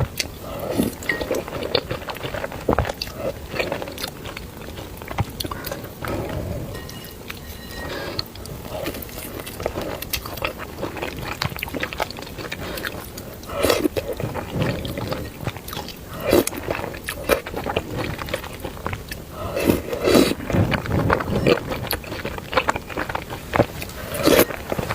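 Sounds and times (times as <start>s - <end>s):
wet chewing and biting: 0.0s - 24.9s.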